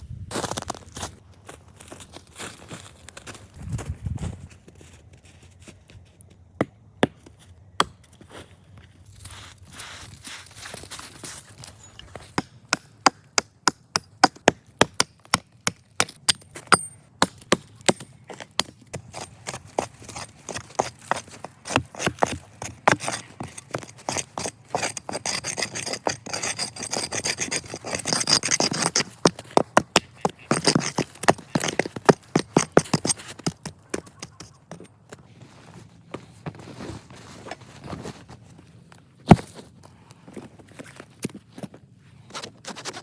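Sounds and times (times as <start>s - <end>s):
rough rasping strokes: 19.2s - 34.5s.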